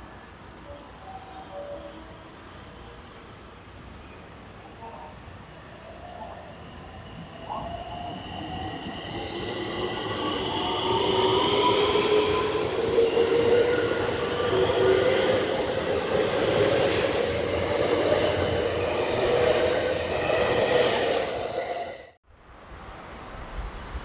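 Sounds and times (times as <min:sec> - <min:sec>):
high train whine: 0:00.0 - 0:22.2
train rail rumble: 0:07.5 - 0:22.2.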